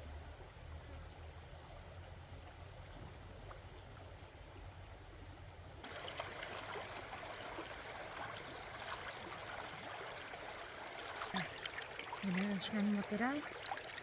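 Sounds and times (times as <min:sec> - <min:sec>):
stream water rushing: 0:05.8 - 0:14.0
water splashes: 0:05.8 - 0:14.0.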